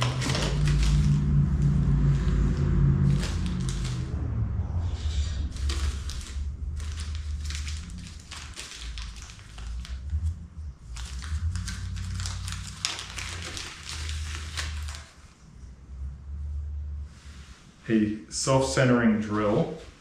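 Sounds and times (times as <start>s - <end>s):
packaging rustling and crinkling: 0.0s - 4.2s, 5.4s - 15.4s
low hum: 0.0s - 20.0s.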